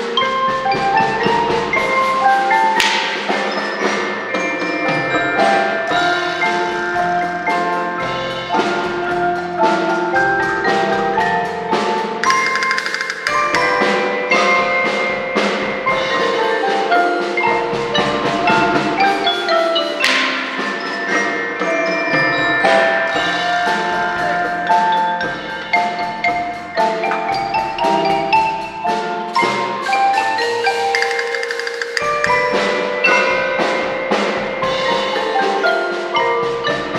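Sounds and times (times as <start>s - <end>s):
mallet percussion melody: 12.2s - 14.3s, 30.0s - 33.3s.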